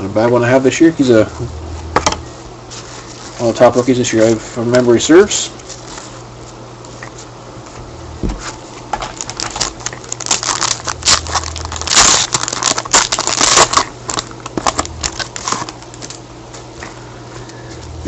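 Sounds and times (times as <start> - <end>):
wrapper crinkling and tearing: 9.0 - 16.2.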